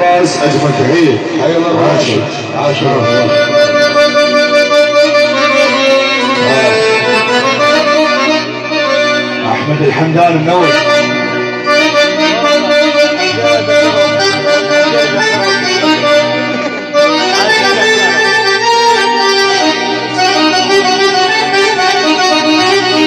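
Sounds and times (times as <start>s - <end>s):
electronic keyboard party music: 0.0s - 23.0s.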